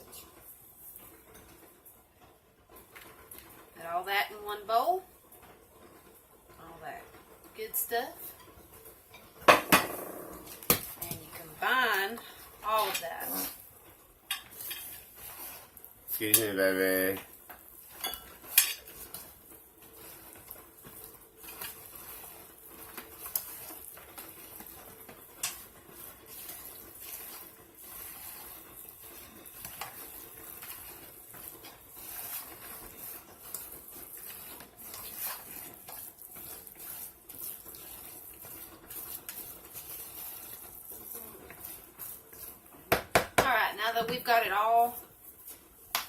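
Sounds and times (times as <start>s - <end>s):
wet mixing in a bowl: 10.3s - 46.0s.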